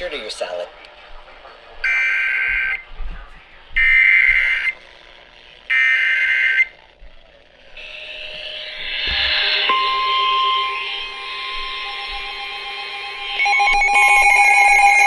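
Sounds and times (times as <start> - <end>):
raspy digital data bursts: 3.8 - 4.8.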